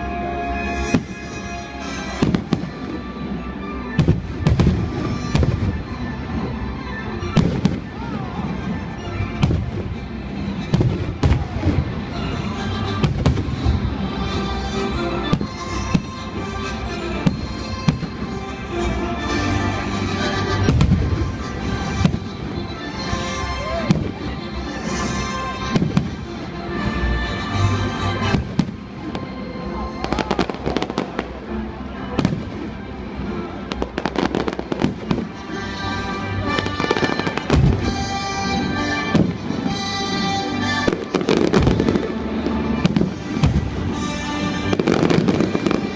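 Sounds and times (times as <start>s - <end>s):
music over loudspeakers: 0.0s - 45.9s
crackling bangs: 42.8s - 45.9s.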